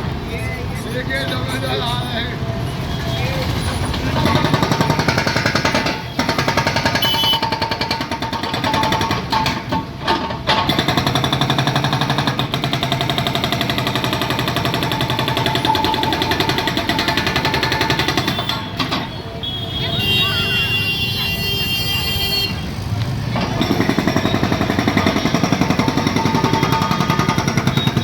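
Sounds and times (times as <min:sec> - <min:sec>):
jackhammer hammering: 0:03.9 - 0:19.0, 0:23.3 - 0:28.0.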